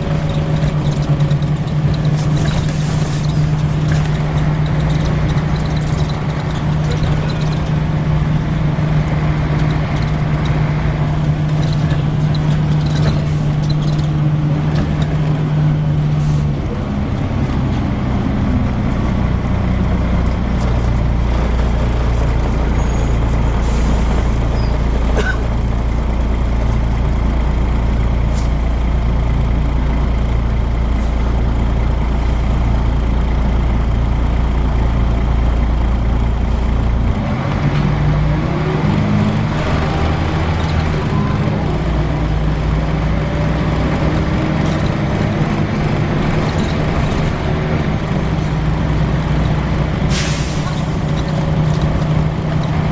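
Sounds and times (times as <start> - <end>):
bus engine drone: 0.0 - 52.9.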